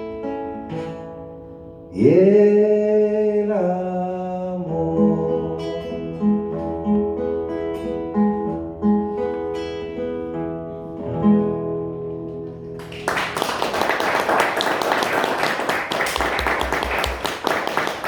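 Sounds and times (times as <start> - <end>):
acoustic guitar playing: 0.0 - 13.6
audience applauding: 12.7 - 18.0.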